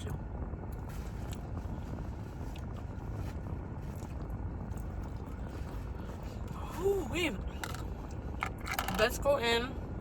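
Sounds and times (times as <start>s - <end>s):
steady low car hum: 0.0s - 10.0s
close-up chewing and eating: 0.8s - 6.6s.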